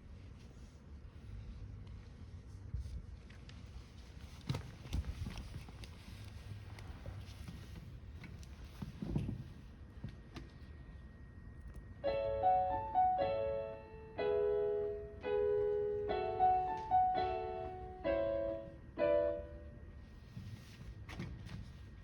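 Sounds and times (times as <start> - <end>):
low room noise: 0.0 - 22.0
piano chords: 12.0 - 20.0.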